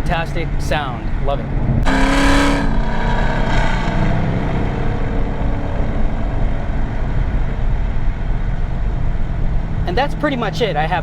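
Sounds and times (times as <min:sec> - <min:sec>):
vee eight engine running: 0:00.0 - 0:11.0.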